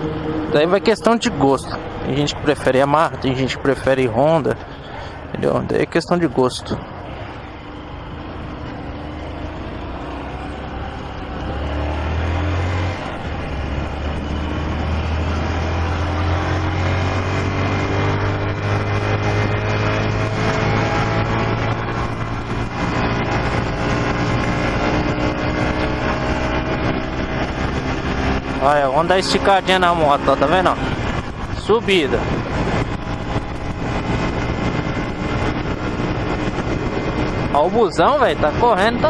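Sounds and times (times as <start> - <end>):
motorcycle engine pulling away: 7.7 - 37.5.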